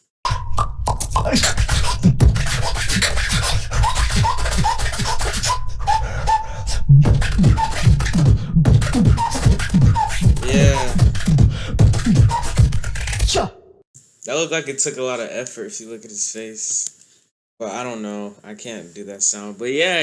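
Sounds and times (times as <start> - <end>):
vocal beatboxing: 0.3 - 13.5.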